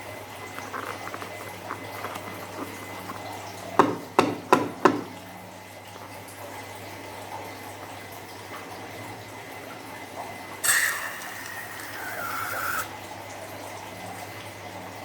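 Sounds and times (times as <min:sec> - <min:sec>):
wet slime squelching: 0:00.3 - 0:03.8.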